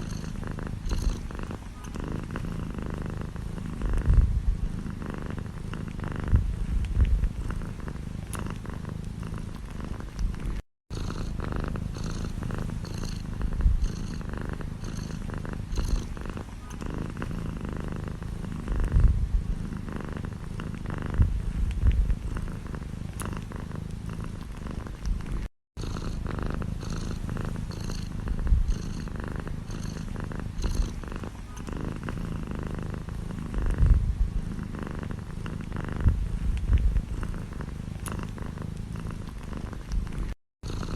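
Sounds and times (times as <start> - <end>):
cat purring: 0.0 - 40.9
soft low bumps: 6.2 - 7.5, 18.7 - 19.6, 21.1 - 22.4, 35.9 - 37.2.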